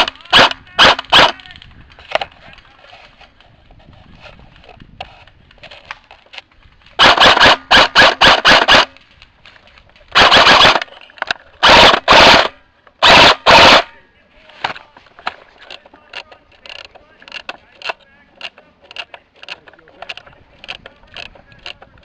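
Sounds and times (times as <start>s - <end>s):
airsoft rifle firing bursts: 0.0s - 1.4s, 7.0s - 9.0s, 10.1s - 10.9s, 11.6s - 14.0s.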